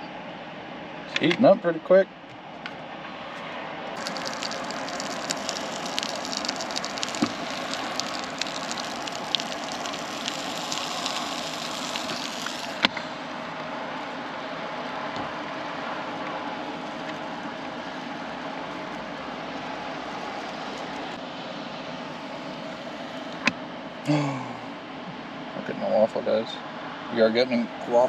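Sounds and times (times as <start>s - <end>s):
waffle maker sizzling: 4.0s - 13.4s, 15.3s - 21.2s.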